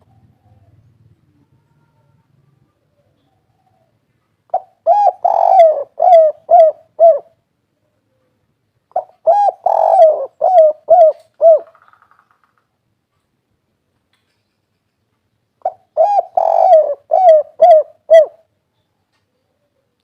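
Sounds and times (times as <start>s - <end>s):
dove cooing: 0.0s - 7.4s, 8.9s - 11.9s, 15.6s - 18.5s.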